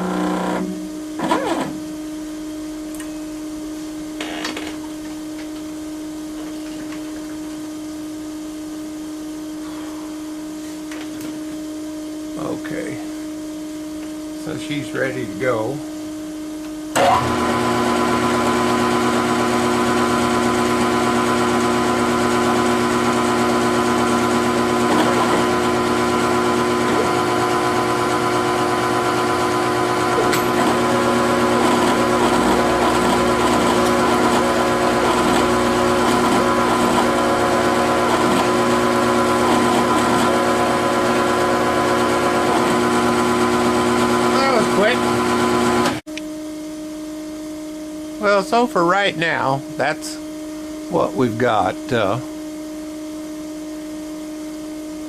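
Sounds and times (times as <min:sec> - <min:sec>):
milling machine drilling: 0:00.0 - 0:01.8, 0:17.0 - 0:46.0.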